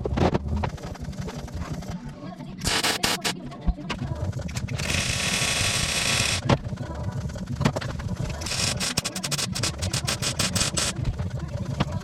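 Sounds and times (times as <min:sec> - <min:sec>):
sharp metal clicks: 0:02.6 - 0:03.4, 0:04.4 - 0:06.4, 0:08.4 - 0:11.0
steady low rumble: 0:06.4 - 0:08.8.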